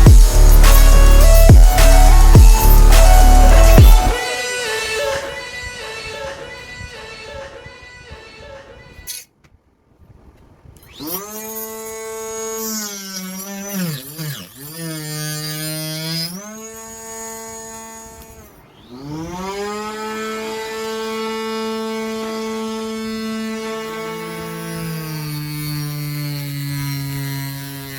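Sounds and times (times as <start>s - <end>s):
small motor spinning saw blade: 0.0s - 5.3s, 10.8s - 27.9s.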